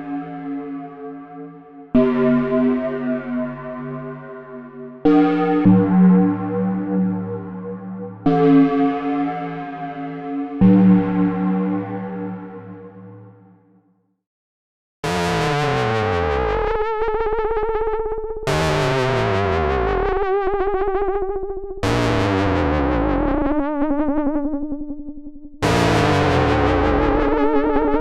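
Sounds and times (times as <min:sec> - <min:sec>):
synthesizer held notes: 0:25.6 - 0:28.0.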